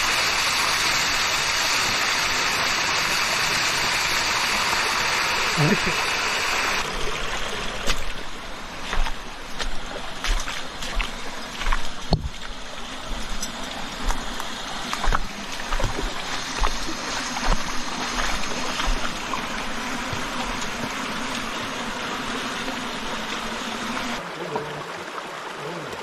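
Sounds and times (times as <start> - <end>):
stream rushing over rocks: 0.0 - 26.0
knocks and splashes: 8.9 - 12.6, 13.2 - 21.5.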